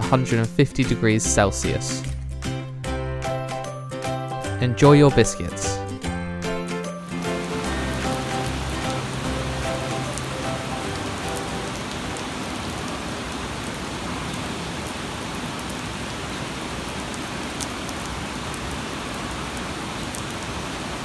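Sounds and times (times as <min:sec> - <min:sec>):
soft background music: 0:00.0 - 0:12.4
steady rain falling: 0:07.0 - 0:21.0.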